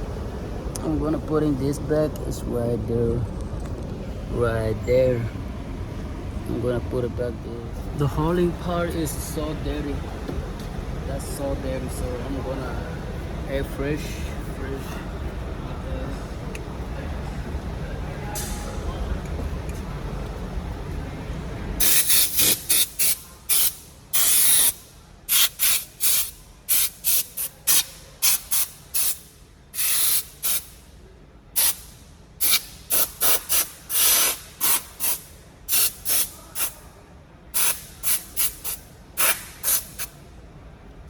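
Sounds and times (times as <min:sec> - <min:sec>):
aerosol spray can hissing: 0:32.4 - 0:36.7, 0:37.6 - 0:40.1.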